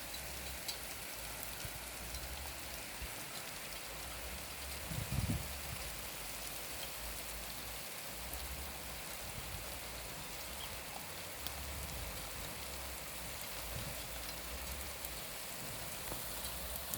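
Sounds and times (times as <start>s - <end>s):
raindrops ticking: 0.0s - 16.9s
steady rain hiss: 0.0s - 16.9s.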